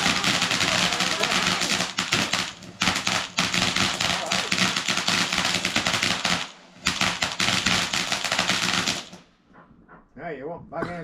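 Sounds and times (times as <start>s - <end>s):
fireworks crackling: 0.0s - 9.4s.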